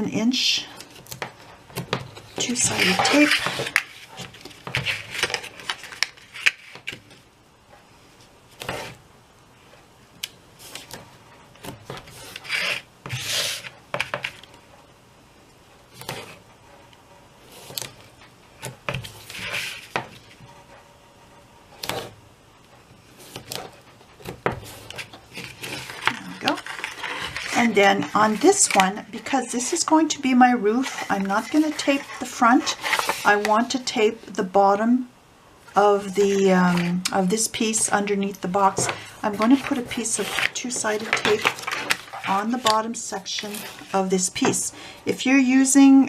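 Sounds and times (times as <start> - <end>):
paper rustling: 2.0 - 7.2, 18.9 - 20.4, 23.2 - 29.9, 30.6 - 33.9, 37.6 - 44.6.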